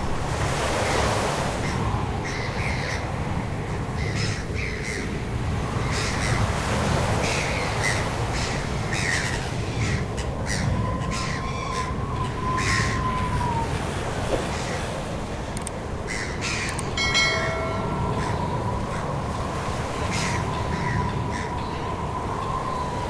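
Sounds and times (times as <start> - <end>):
low rumble of surf: 0.0 - 23.0
birds squawking: 1.6 - 13.7, 16.0 - 22.0.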